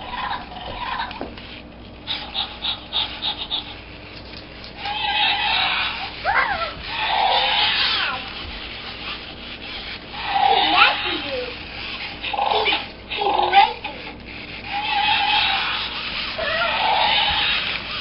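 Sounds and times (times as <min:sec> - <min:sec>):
robot dinosaur toy growls: 0:00.0 - 0:01.2, 0:04.8 - 0:08.4, 0:10.1 - 0:11.3, 0:12.2 - 0:14.0, 0:14.6 - 0:18.0
squealing call: 0:04.9 - 0:06.1, 0:14.7 - 0:17.8.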